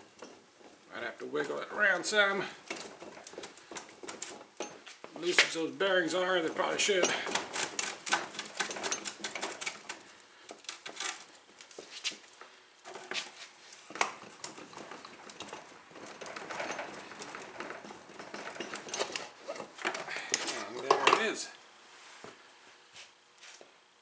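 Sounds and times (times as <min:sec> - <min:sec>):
metal clinks and knocks: 0:00.0 - 0:11.3, 0:12.9 - 0:21.4.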